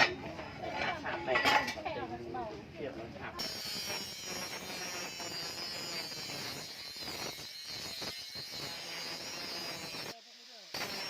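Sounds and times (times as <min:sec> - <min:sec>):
power tool whining on metal: 0:03.4 - 0:11.0.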